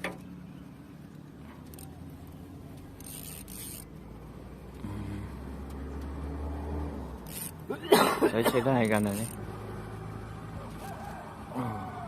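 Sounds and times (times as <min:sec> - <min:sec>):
engine humming: 0:00.0 - 0:12.0.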